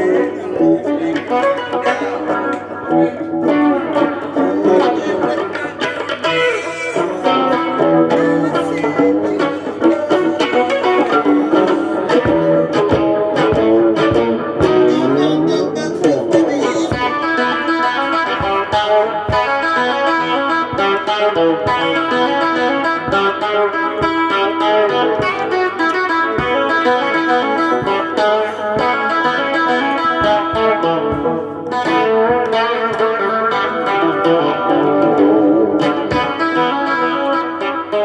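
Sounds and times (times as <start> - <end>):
electric guitar through effects: 0.0 - 38.0.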